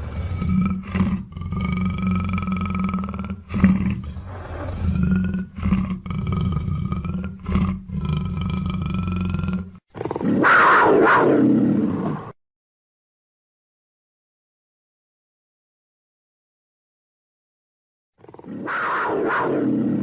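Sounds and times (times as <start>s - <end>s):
big cat growling: 0.0s - 12.4s, 18.2s - 20.0s
big cat roaring: 0.0s - 12.4s, 18.2s - 20.0s.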